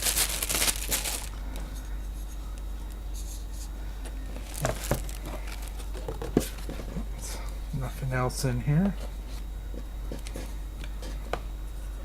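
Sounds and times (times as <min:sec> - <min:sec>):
packaging rustling: 0:00.0 - 0:01.4, 0:04.4 - 0:06.7.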